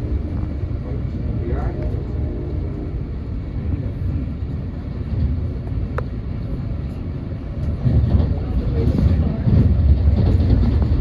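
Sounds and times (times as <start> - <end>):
moving train rumble: 0.0 - 11.0.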